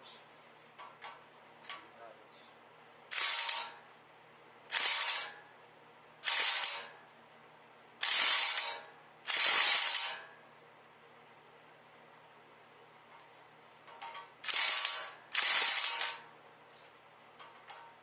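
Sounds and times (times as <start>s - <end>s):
electric impact wrench bursts: 3.1s - 3.8s, 4.7s - 5.4s, 6.2s - 7.0s, 8.0s - 10.3s, 14.4s - 16.3s.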